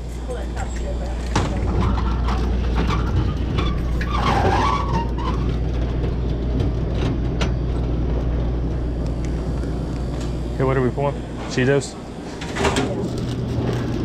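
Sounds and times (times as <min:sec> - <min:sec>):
steady low hum: 0:00.0 - 0:14.0
snack bag crinkling: 0:13.0 - 0:14.0.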